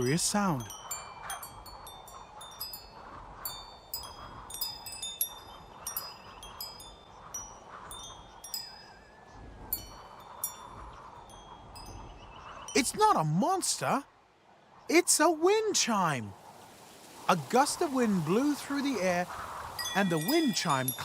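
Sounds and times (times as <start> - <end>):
wind chime ringing: 0.0 - 13.0, 19.8 - 21.0.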